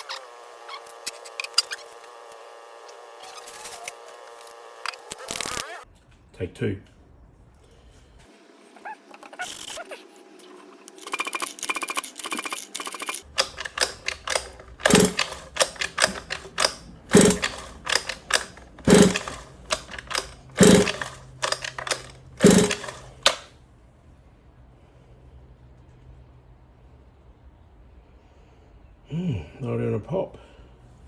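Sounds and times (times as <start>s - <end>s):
engine turning over clattering: 11.0s - 23.5s
pull starter clicks rattling: 11.0s - 23.5s.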